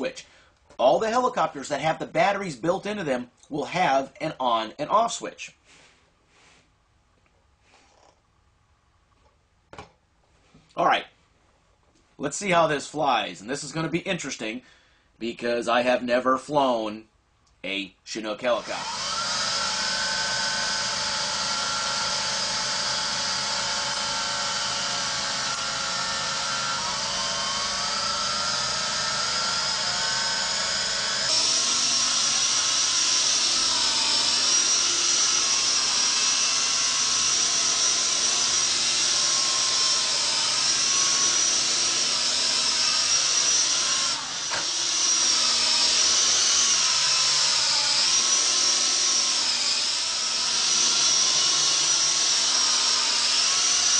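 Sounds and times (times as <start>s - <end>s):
toy helicopter motors whining: 18.6s - 53.9s.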